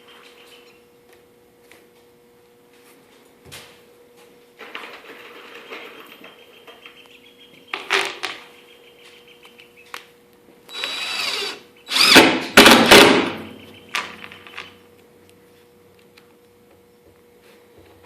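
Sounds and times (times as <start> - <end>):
power drill driving screws into wood: 10.7 - 13.3.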